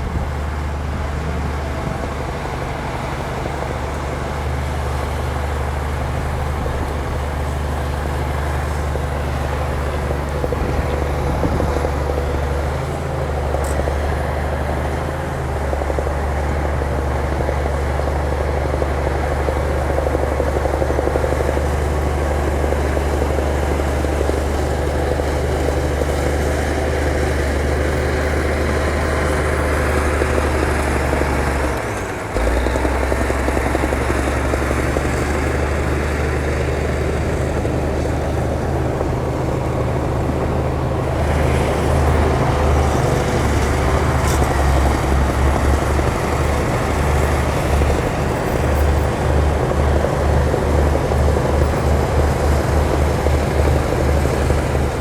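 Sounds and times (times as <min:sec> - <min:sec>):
diesel engine droning: 0:00.0 - 0:55.0.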